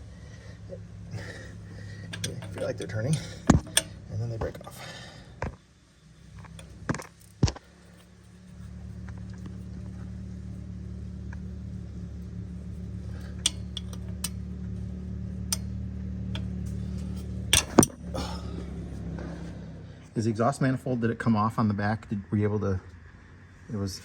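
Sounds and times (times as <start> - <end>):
low steady hum: 0.0 - 24.0
metal tools clinking: 1.2 - 4.8, 13.0 - 14.5, 15.4 - 18.4.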